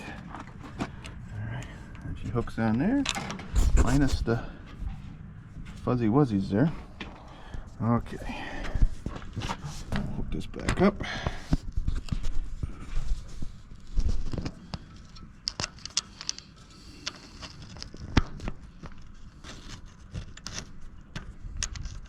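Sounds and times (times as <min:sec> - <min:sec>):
tools clicking and clinking: 0:14.4 - 0:19.0.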